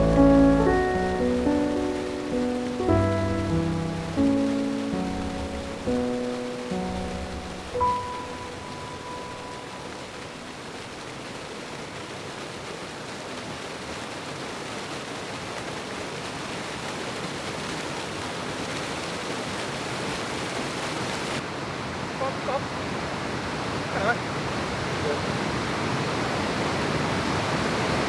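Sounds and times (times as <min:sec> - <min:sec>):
waterfall rushing: 0:00.0 - 0:15.9.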